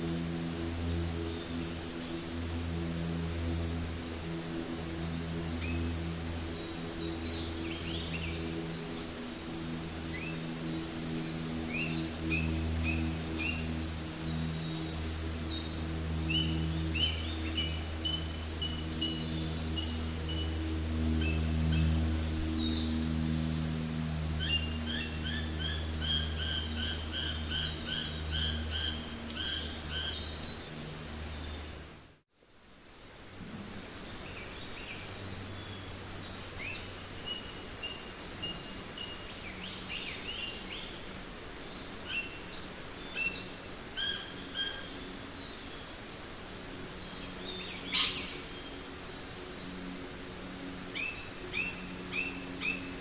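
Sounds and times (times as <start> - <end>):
low steady hum: 0.0 - 53.0
songbirds chirping: 0.0 - 53.0.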